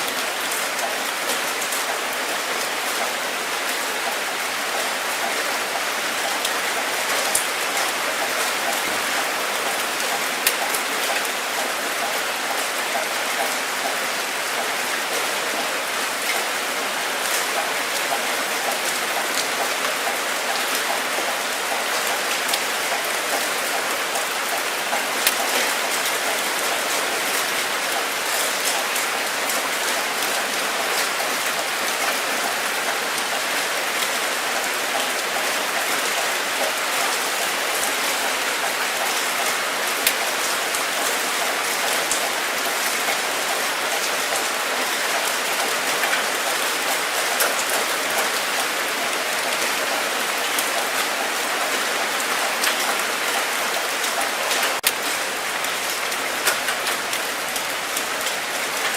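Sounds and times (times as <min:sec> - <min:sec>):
steady rainfall: 0:00.0 - 0:58.9
raindrops tapping: 0:06.1 - 0:14.7, 0:17.2 - 0:51.4, 0:52.0 - 0:58.9.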